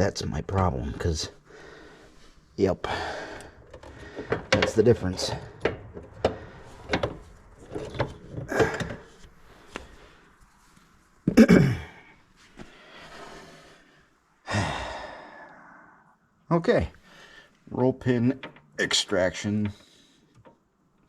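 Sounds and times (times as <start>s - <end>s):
metal tools clicking and knocking: 3.6s - 9.1s
long breathy sigh: 14.4s - 16.2s.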